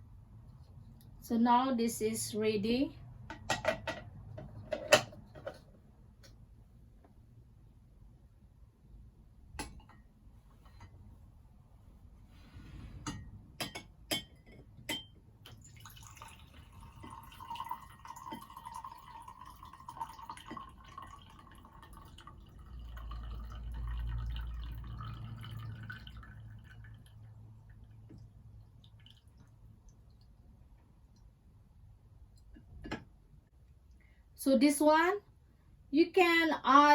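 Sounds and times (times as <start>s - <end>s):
drink pouring into a glass: 15.5s - 29.6s.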